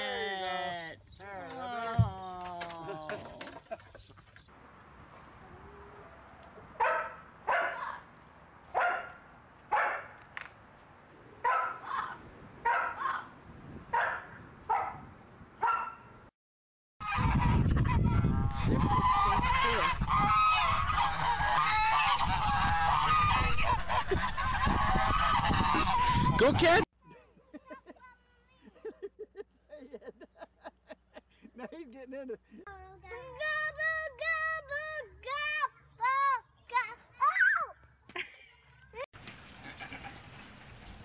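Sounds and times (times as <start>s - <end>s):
chorus of animal calls: 17.0s - 26.2s.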